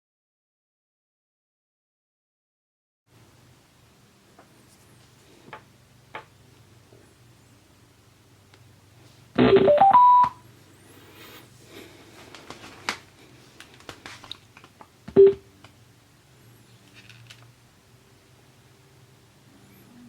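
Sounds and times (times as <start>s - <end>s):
electronic beeps: 9.4s - 10.4s, 15.2s - 15.4s.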